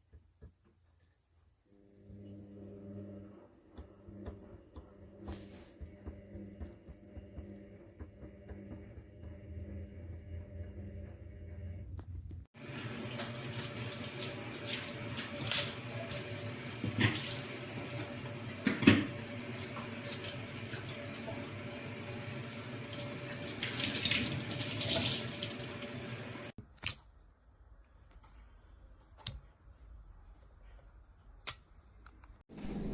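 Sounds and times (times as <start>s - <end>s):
tap running into a sink: 12.7s - 26.5s.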